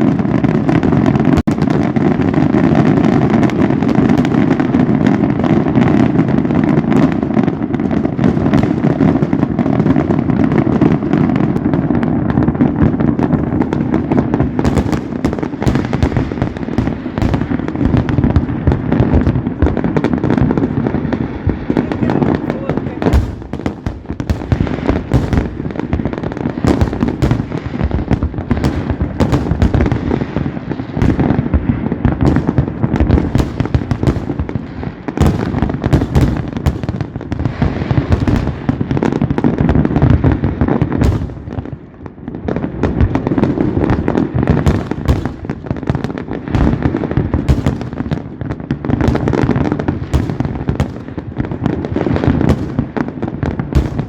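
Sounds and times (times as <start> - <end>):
fireworks bursting and crackling: 0.0 - 54.0
deep rumble of booms: 11.5 - 30.2.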